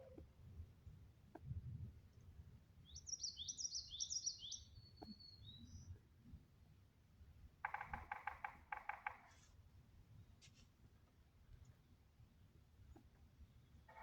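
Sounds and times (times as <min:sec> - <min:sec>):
songbird chirping: 0:02.8 - 0:06.0
woodpecker drumming: 0:07.6 - 0:09.2.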